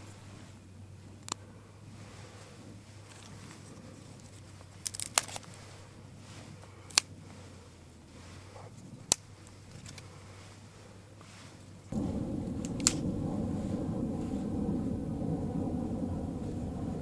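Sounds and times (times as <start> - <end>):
campfire crackling and popping: 11.9 - 17.0.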